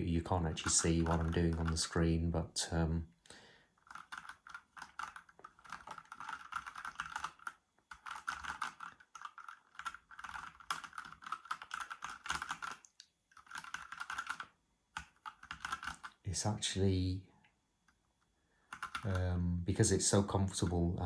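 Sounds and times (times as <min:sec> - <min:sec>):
mechanical keyboard typing: 0:00.5 - 0:02.1, 0:03.8 - 0:16.2, 0:18.7 - 0:19.3.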